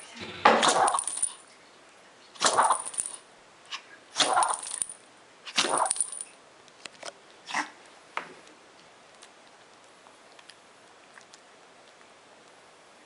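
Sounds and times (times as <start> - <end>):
small dog sneezing: 7.5 - 7.8.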